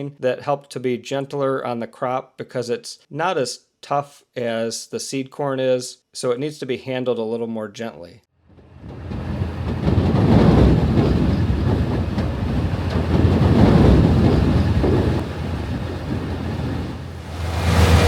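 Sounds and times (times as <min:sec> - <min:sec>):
heavy machinery rumbling: 0:08.5 - 0:18.0.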